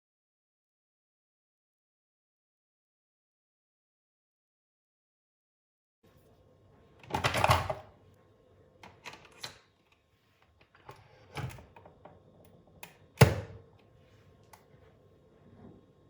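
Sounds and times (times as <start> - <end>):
faint steady hum: 6.1 - 16.0.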